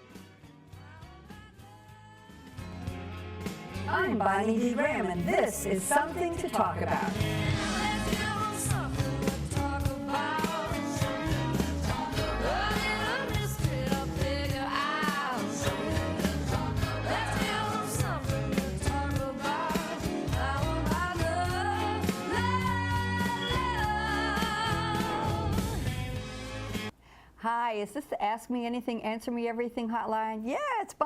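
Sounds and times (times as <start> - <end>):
pop-rock song with singer and band: 6.9 - 26.8.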